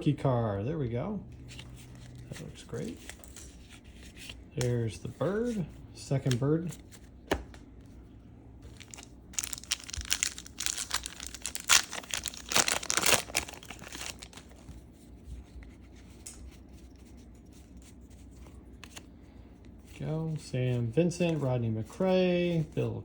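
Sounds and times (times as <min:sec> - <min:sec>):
wrapper tearing and crinkling: 0:08.7 - 0:14.6.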